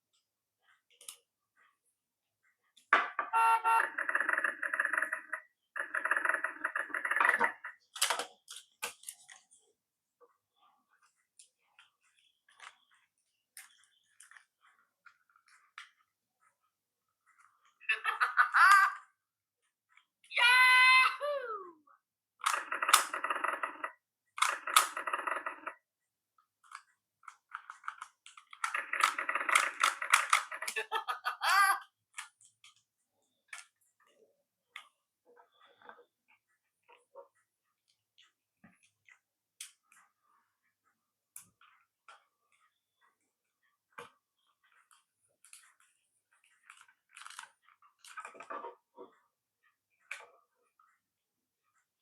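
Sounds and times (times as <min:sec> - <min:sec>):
toy speaker short tone: 0:03.3 - 0:04.0
toy speaker crackly sound effect: 0:03.4 - 0:07.9, 0:22.4 - 0:25.8, 0:28.6 - 0:31.9.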